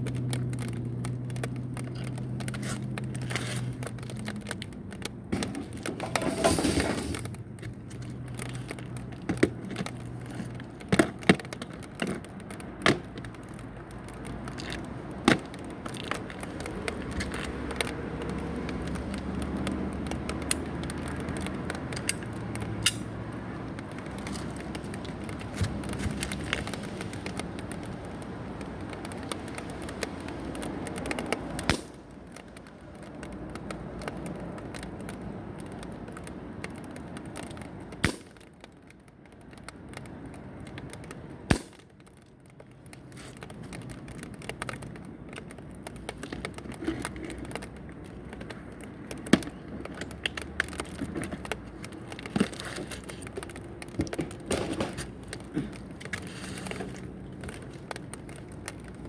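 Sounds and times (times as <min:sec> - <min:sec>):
gun handling clicks and rattling: 0:00.0 - 0:59.0
air gun cracks: 0:22.0 - 0:23.2, 0:31.6 - 0:32.0, 0:41.5 - 0:41.9.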